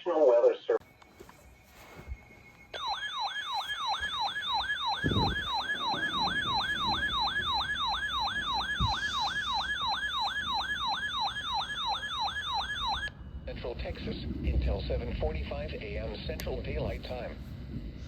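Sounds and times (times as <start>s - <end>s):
electronic siren yelping: 2.5s - 13.2s
low thumps: 4.0s - 9.6s.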